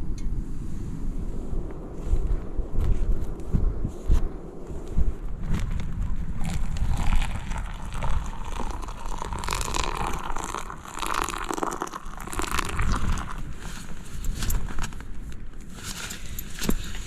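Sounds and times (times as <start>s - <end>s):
crinkling and rustling material: 12.5s - 17.0s.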